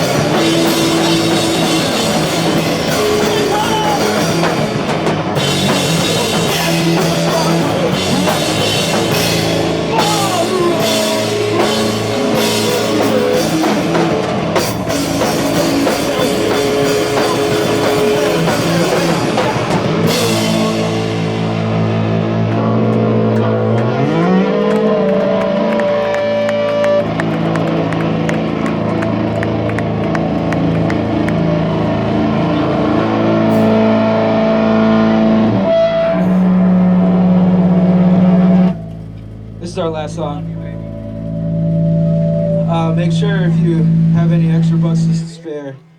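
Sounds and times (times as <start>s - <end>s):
drum kit: 0.0s - 45.4s
live rock band playing: 0.0s - 45.5s
distorted electric guitar: 0.0s - 45.9s.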